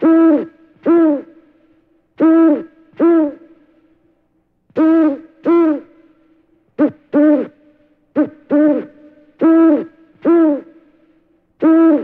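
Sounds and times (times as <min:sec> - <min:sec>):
owl hooting: 0:00.0 - 0:01.5, 0:02.2 - 0:03.6, 0:04.8 - 0:06.0, 0:06.8 - 0:10.8, 0:11.6 - 0:12.0.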